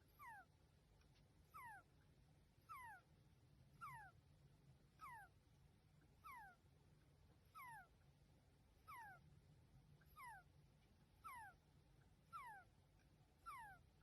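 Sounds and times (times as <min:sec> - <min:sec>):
hedgehog squeaky breathing: 0:00.1 - 0:00.5, 0:01.5 - 0:01.9, 0:02.7 - 0:03.0, 0:03.8 - 0:04.2, 0:05.0 - 0:05.3, 0:06.2 - 0:06.6, 0:07.5 - 0:07.9, 0:08.8 - 0:09.2, 0:10.1 - 0:10.5, 0:11.2 - 0:11.6, 0:12.3 - 0:12.7, 0:13.4 - 0:13.8.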